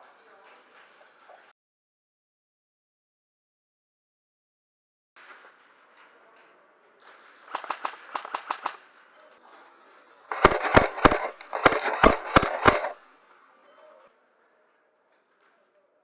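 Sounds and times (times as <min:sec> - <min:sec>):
airsoft guns firing single shots: 0:07.5 - 0:08.8, 0:10.3 - 0:13.0.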